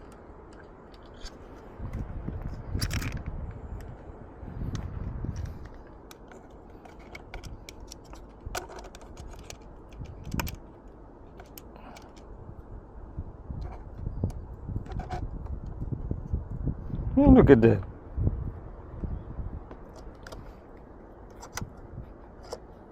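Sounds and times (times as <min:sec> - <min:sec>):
camera mount clicks and creaks: 0:00.0 - 0:03.3, 0:04.7 - 0:10.6, 0:13.6 - 0:15.6, 0:19.8 - 0:20.5, 0:21.3 - 0:22.7.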